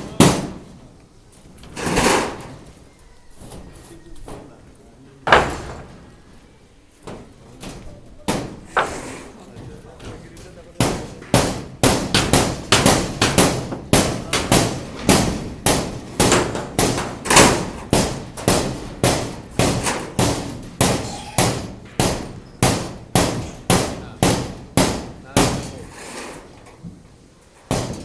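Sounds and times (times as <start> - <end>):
hammer blows ringing: 10.8 - 25.8.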